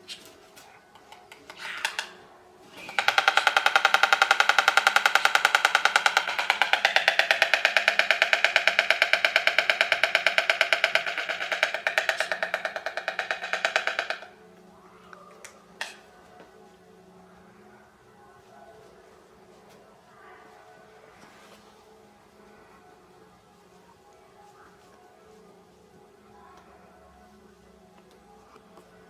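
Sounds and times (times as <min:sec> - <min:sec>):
storks bill-clattering: 0:00.6 - 0:14.4.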